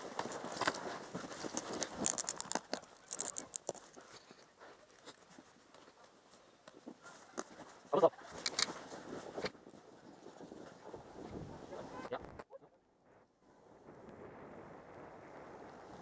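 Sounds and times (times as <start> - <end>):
crunching and scraping in snow: 0.0 - 12.0.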